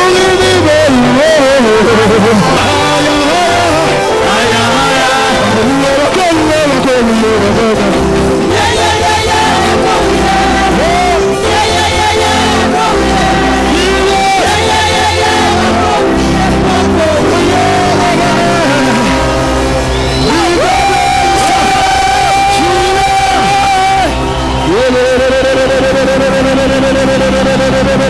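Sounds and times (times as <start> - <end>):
congregation shouting: 0.0 - 28.0
worship music with singing: 0.0 - 28.0.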